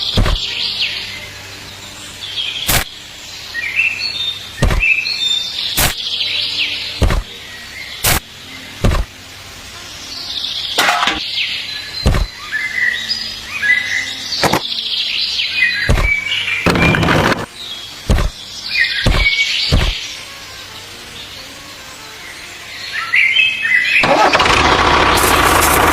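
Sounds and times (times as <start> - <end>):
birds chirping: 0.0 - 9.1, 10.0 - 25.8
sharp knock: 4.6 - 4.9, 7.0 - 7.3, 8.8 - 9.1, 12.0 - 12.3, 18.1 - 18.3, 19.1 - 20.0.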